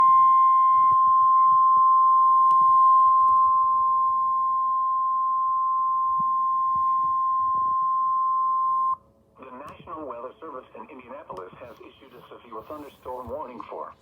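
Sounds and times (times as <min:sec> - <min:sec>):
steady high warning beep: 0:00.0 - 0:09.0.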